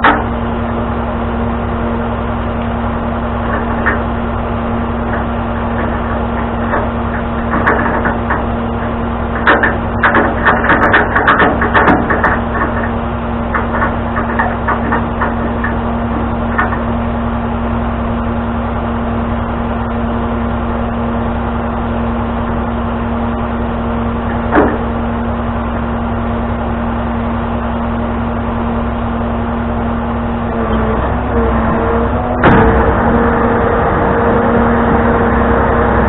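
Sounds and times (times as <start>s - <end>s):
tow truck engine humming: 0.0s - 36.0s
knocks and rattles: 3.4s - 4.1s, 5.0s - 16.9s, 24.3s - 25.0s.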